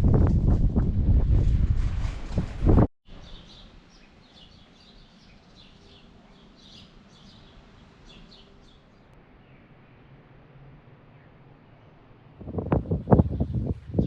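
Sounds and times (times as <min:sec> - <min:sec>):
small birds chirping: 0:03.1 - 0:10.0
faint outdoor ambience: 0:03.1 - 0:14.0.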